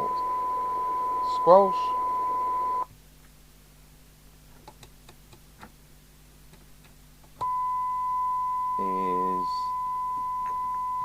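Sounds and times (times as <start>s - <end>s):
radio test tone: 0.0s - 2.8s, 7.4s - 11.0s.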